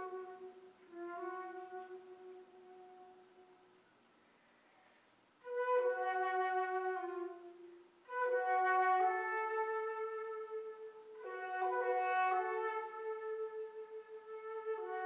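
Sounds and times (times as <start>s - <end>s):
low flute notes: 0.0s - 3.9s, 5.4s - 15.0s.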